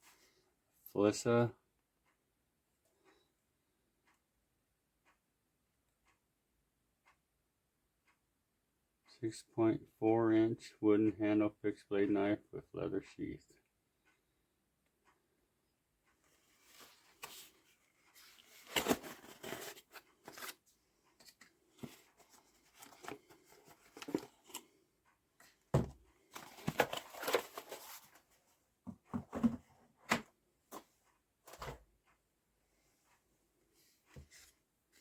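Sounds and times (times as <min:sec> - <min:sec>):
paper and plastic rustling: 0:16.5 - 0:24.6, 0:26.3 - 0:28.4.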